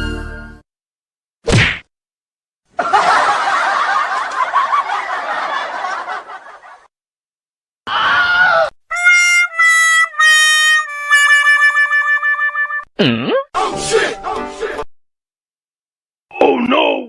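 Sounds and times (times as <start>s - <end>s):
group of people laughing: 2.7s - 6.9s.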